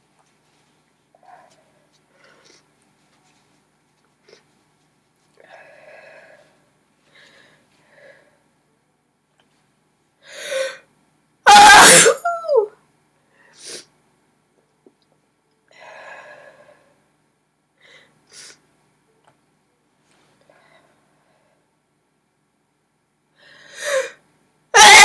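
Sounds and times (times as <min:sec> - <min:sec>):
quiet breathing: 0:00.4 - 0:08.7, 0:13.2 - 0:14.0, 0:15.7 - 0:17.1, 0:17.8 - 0:18.7, 0:20.0 - 0:21.9, 0:23.3 - 0:24.2
woman sneezing: 0:11.5 - 0:12.7, 0:24.8 - 0:25.0.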